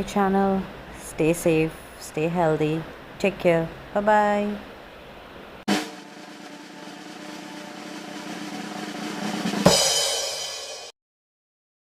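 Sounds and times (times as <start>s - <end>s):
held music notes: 5.7s - 10.8s
drum hit: 5.7s - 10.9s.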